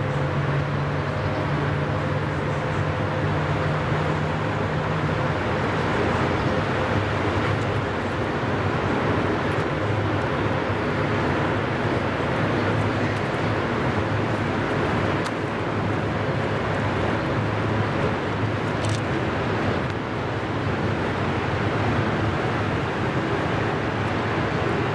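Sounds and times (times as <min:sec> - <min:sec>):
locomotive low hum: 0:00.0 - 0:18.6.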